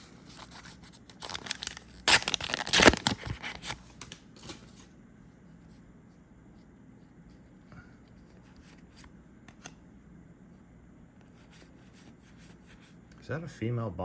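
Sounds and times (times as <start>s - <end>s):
foil pack tearing and crinkling: 0.2s - 4.8s.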